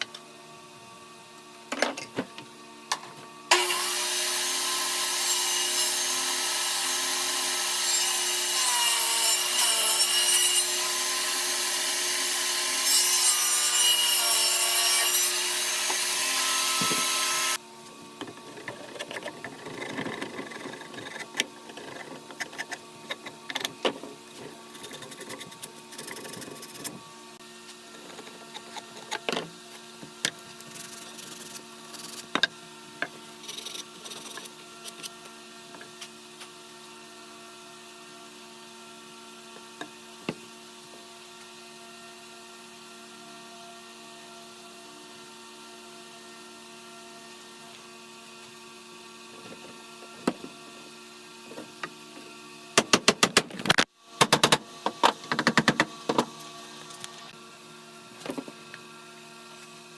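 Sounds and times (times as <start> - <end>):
power sander on wood: 10.1 - 17.6.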